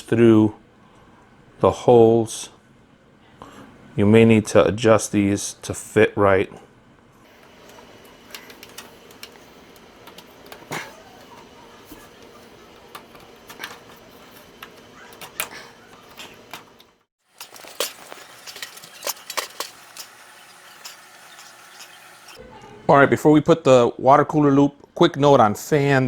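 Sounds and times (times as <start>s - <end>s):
computer hardware clicks and rattles: 7.3s - 22.4s.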